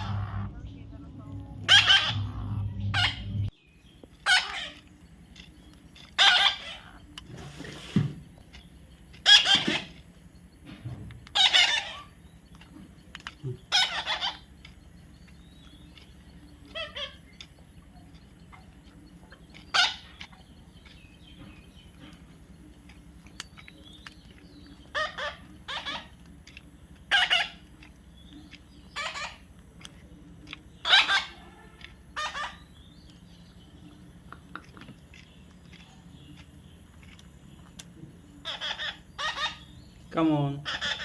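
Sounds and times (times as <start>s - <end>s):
parrot squawking: 0.0s - 3.5s, 4.2s - 4.8s, 6.2s - 7.0s, 9.2s - 10.0s, 11.3s - 12.2s, 13.6s - 14.5s, 16.6s - 17.5s, 19.6s - 21.0s, 24.9s - 26.2s, 27.1s - 27.7s, 28.9s - 29.5s, 30.8s - 32.8s, 38.4s - 39.8s, 40.6s - 41.0s.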